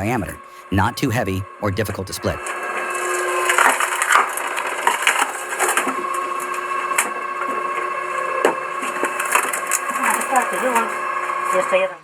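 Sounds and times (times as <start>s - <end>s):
machine motor hum: 0.0s - 12.0s
wood cracking and splintering: 3.0s - 10.9s.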